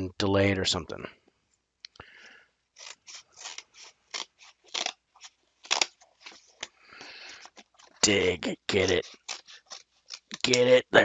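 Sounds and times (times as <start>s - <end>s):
package being cut open: 2.8s - 10.7s.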